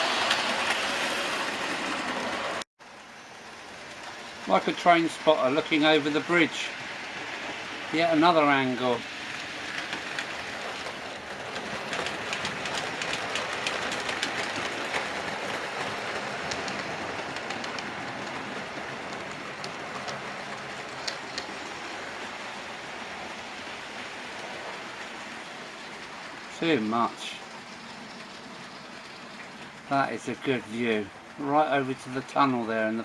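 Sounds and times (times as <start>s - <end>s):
model train wheels rattling: 3.8s - 33.0s
clicks over rail joints: 9.4s - 21.7s.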